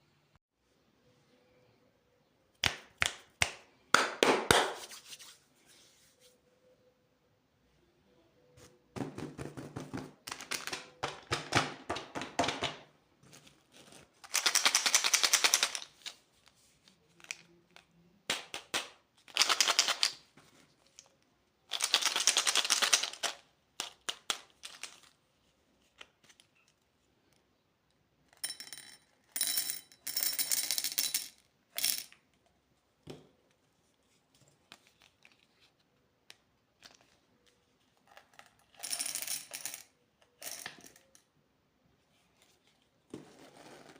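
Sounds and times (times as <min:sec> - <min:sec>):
candy packaging rattling and crinkling: 0:13.3 - 0:16.3, 0:18.6 - 0:20.3, 0:21.6 - 0:25.2.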